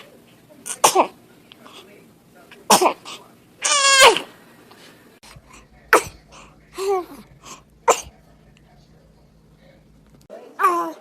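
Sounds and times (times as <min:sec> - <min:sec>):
baby sneezing: 0:00.6 - 0:01.2, 0:02.7 - 0:04.3, 0:05.9 - 0:06.2, 0:07.8 - 0:08.2.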